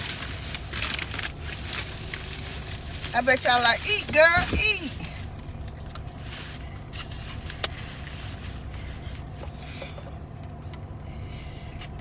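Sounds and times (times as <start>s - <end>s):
car engine hum inside cabin: 0.0s - 12.0s.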